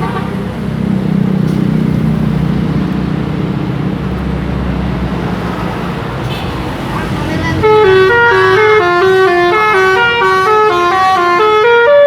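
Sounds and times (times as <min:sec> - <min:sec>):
bus engine droning: 0:00.0 - 0:12.0.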